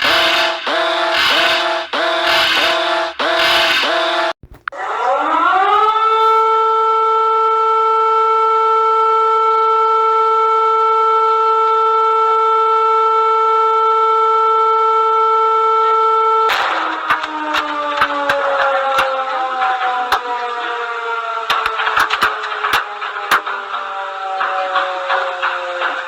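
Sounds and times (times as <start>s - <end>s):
civil defence siren winding up: 0.0s - 26.0s.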